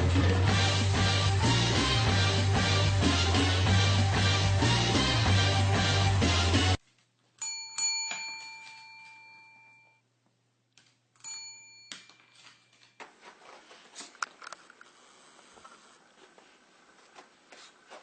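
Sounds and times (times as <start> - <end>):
doorbell chime ringing: 7.4 - 10.0, 11.2 - 13.0.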